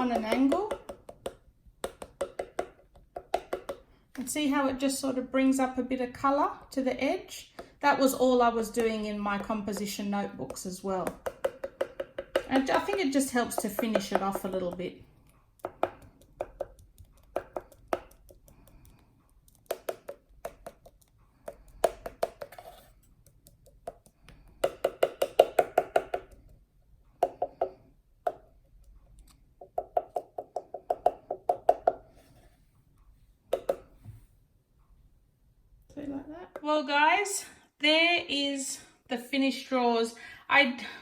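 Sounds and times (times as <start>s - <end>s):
ink pad tapping on wood: 0.0s - 4.3s, 8.5s - 15.0s, 15.6s - 26.6s, 27.2s - 28.5s, 29.6s - 32.0s, 33.5s - 34.2s.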